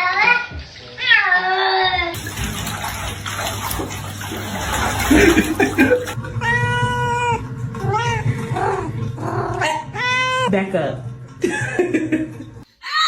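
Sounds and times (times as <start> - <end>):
bath water splashing: 2.2 - 12.6
cat yowling: 6.3 - 10.6
cat meowing: 8.8 - 10.5.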